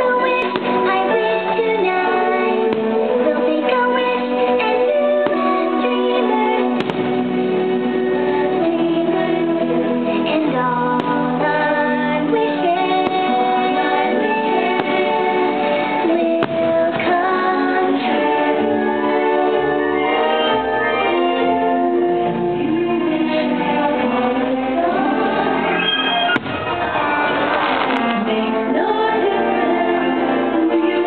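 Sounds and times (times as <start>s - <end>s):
woman singing with choir: 0.0s - 6.8s, 7.9s - 26.2s, 28.0s - 31.0s
sharp pops: 6.8s - 7.1s.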